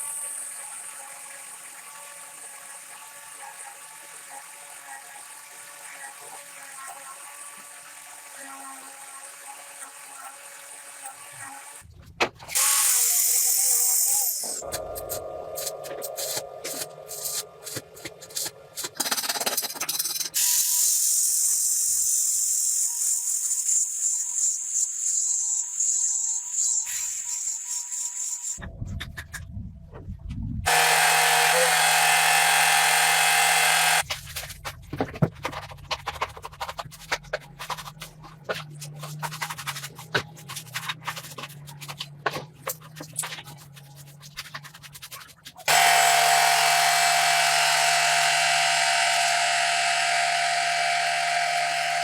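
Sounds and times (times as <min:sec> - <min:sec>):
scraping and scratching strokes: 0:12.5 - 0:20.4, 0:30.7 - 0:52.0
tool rasping strokes: 0:30.7 - 0:34.0, 0:45.7 - 0:52.0.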